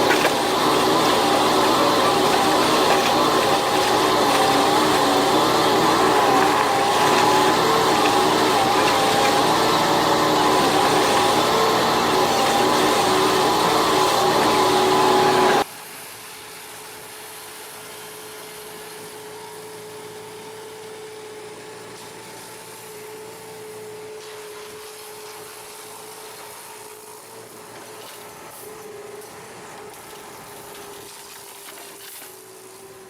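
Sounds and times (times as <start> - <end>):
machine motor whining: 0.0 - 15.6.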